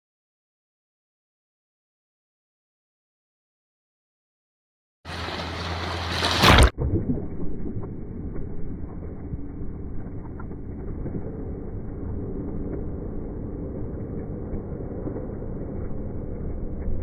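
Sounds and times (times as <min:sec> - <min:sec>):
ocean surf: 0:05.1 - 0:06.7
muffled wind: 0:07.4 - 0:17.0.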